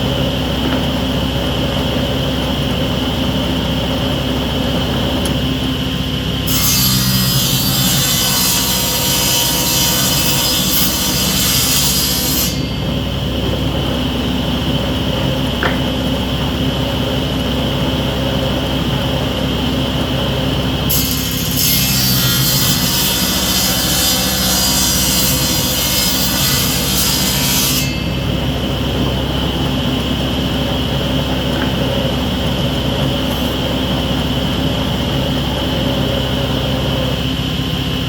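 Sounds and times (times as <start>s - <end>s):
saw ripping board: 6.5s - 12.8s, 20.9s - 28.1s.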